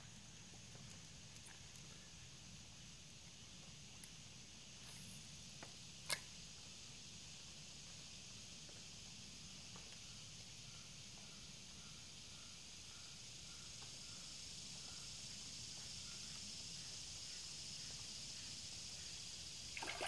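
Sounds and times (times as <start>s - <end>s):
high insect hiss: 0.0s - 20.0s
faint ticks: 3.0s - 4.2s.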